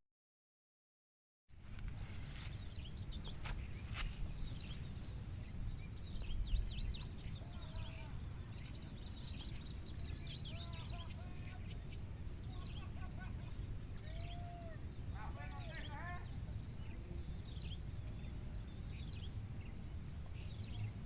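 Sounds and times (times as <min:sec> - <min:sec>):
birds chirping: 0:01.6 - 0:21.0.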